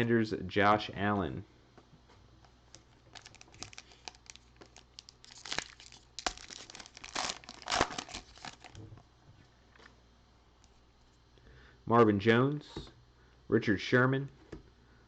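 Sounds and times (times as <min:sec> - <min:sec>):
plastic wrapper crinkling and tearing: 0:02.7 - 0:08.8.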